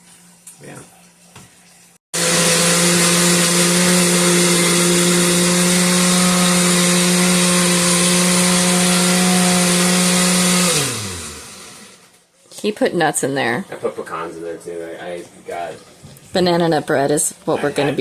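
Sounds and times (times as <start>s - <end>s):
blender motor running: 2.2s - 12.1s.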